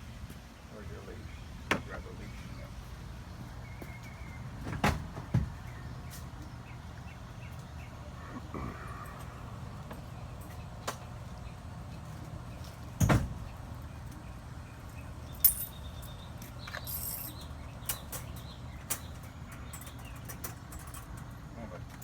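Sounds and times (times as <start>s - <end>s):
steady low hum: 0.0s - 21.9s
metallic jingle: 15.4s - 15.9s, 16.8s - 17.4s.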